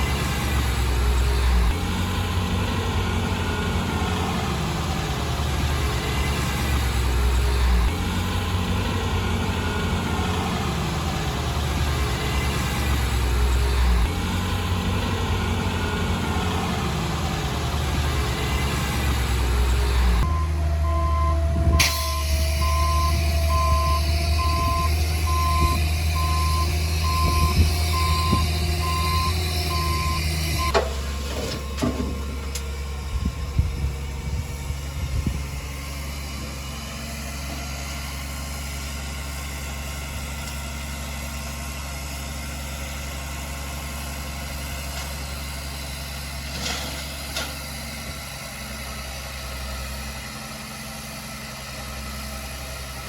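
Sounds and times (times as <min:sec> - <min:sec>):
diesel engine running: 0:00.0 - 0:53.0
back-up alarm beeping: 0:20.2 - 0:30.9
knocks and clanks: 0:30.6 - 0:32.7.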